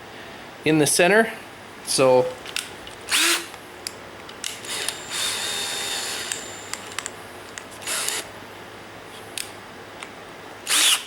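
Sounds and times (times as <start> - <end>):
handling clicks: 2.4 - 5.0, 6.3 - 8.2
power drill whining: 3.1 - 3.5, 4.5 - 7.1, 7.8 - 8.3, 10.6 - 11.0.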